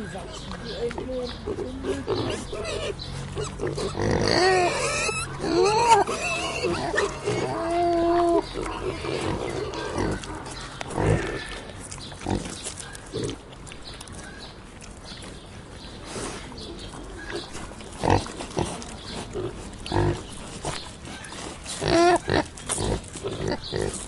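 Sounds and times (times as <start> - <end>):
pigs chewing and crunching: 0.0 - 24.0
pigs grunting: 0.0 - 24.0.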